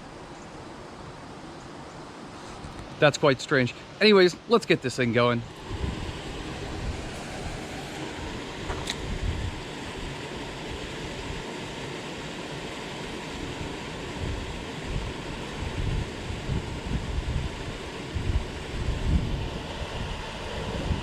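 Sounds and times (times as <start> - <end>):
wind noise on microphone: 5.4 - 11.4, 13.6 - 21.0.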